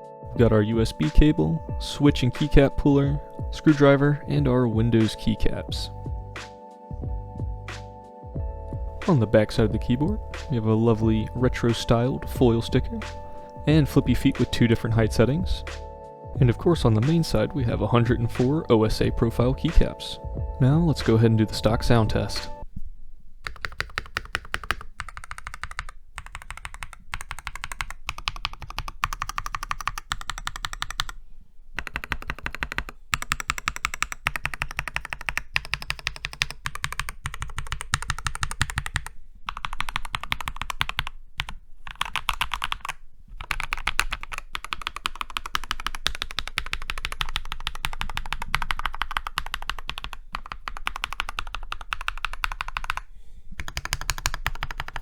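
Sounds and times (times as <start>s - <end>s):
mechanical keyboard typing: 23.4s - 31.2s, 31.8s - 55.0s.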